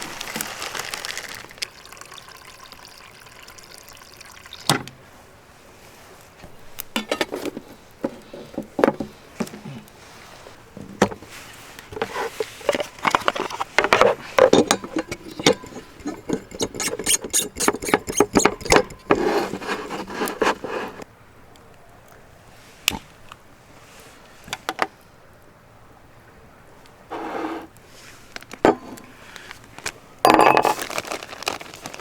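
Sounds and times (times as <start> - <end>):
handling clicks and scraping: 6.2 - 10.0, 10.8 - 21.1, 27.1 - 32.0.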